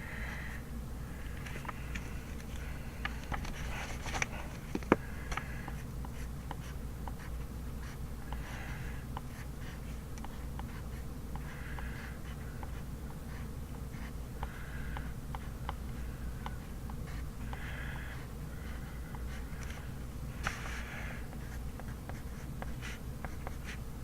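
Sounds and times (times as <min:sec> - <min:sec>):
pen scratching on paper: 0:05.3 - 0:23.8.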